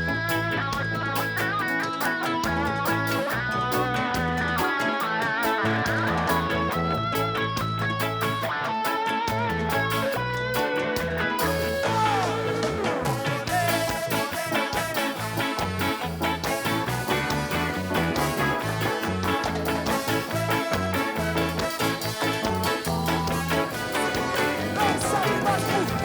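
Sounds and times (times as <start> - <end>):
live band playing upbeat instrumental: 0.0 - 26.0
horns: 11.5 - 26.0.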